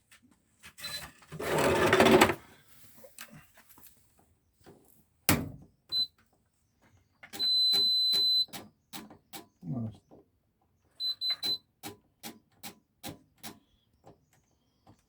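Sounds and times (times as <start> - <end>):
washing machine beeping: 5.9 - 6.2, 7.3 - 8.6, 11.0 - 11.7.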